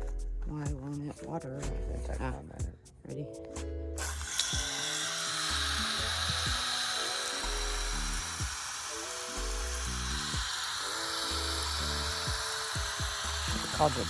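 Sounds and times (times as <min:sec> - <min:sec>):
music with bass beat: 0:00.0 - 0:04.7, 0:05.6 - 0:06.7, 0:09.4 - 0:10.5, 0:11.6 - 0:14.0
hose spraying water on rocks: 0:04.0 - 0:14.0.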